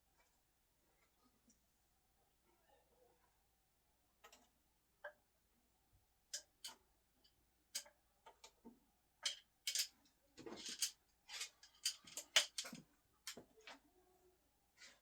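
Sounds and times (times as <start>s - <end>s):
screwdrivers clicking and clinking: 9.2s - 13.4s.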